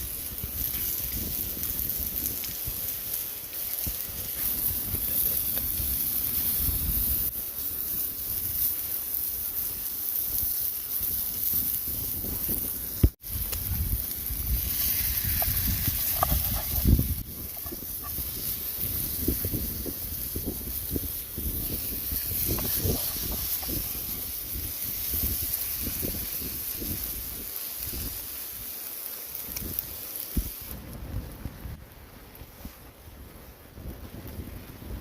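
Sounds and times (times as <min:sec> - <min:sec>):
rain hissing: 0:00.0 - 0:35.0
wind rumbling on microphone: 0:00.0 - 0:35.0.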